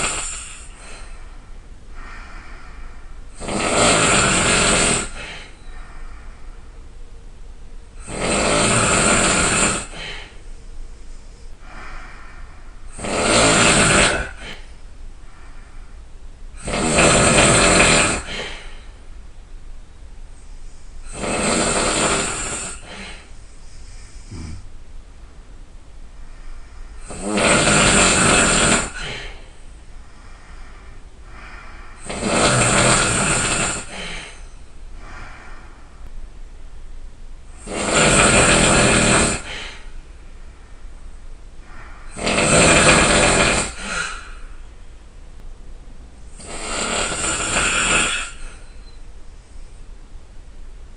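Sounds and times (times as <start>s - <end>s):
person snoring loudly: 0.0s - 1.1s, 3.3s - 5.6s, 8.0s - 10.4s, 12.9s - 14.7s, 16.6s - 18.8s, 21.0s - 23.3s, 24.1s - 24.6s, 27.0s - 29.5s, 31.4s - 34.4s, 37.6s - 39.9s, 41.7s - 44.5s, 46.4s - 48.6s
soft breathing: 0.0s - 3.4s, 5.0s - 7.4s, 9.8s - 12.9s, 14.3s - 16.4s, 20.1s - 21.1s, 22.4s - 24.8s, 26.0s - 27.1s, 28.9s - 32.2s, 32.8s - 36.5s, 38.9s - 45.4s.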